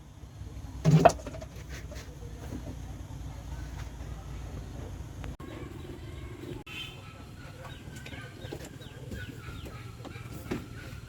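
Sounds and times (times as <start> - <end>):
birds chirping: 5.3 - 11.0.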